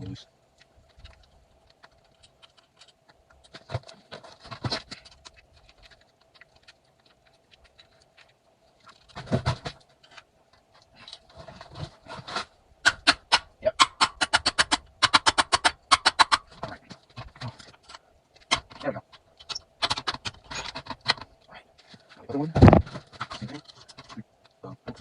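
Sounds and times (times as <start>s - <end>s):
tools and metal parts clicking: 17.8s - 21.3s.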